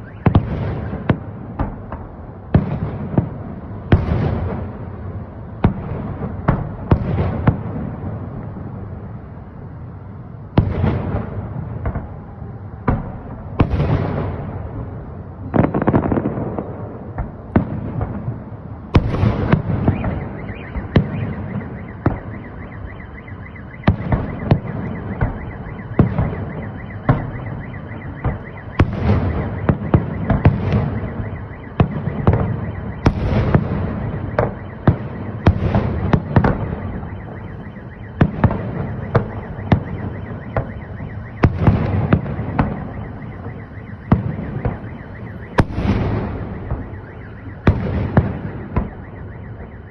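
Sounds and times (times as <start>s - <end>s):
fireworks bangs: 0.0s - 9.7s, 10.5s - 49.9s
car alarm warbling: 19.6s - 49.9s.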